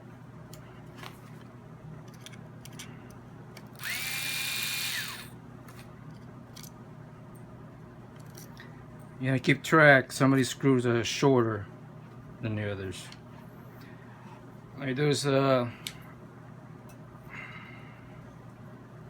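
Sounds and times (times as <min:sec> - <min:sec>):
screws and parts clicking: 0:03.6 - 0:05.3
cordless driver spinning: 0:03.7 - 0:05.4.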